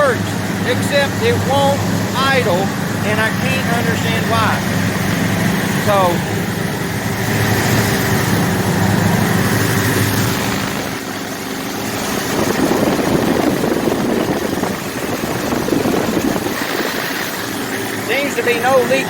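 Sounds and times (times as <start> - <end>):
truck engine running: 0.0 - 19.0.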